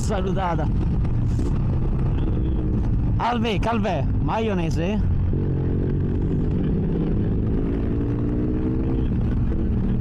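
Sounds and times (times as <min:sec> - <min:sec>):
motorcycle engine running: 0:00.0 - 0:10.0
road and wind noise: 0:00.0 - 0:10.0.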